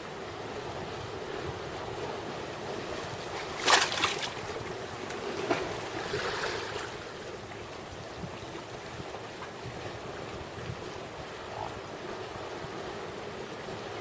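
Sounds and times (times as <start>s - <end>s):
sea waves washing: 0.0s - 14.0s
wind buffeting microphone: 4.3s - 12.9s.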